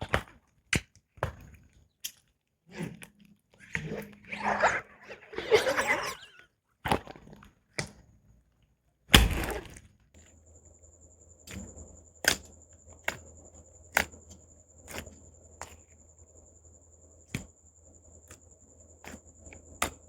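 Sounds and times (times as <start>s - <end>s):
faint high whine: 9.3s - 20.0s.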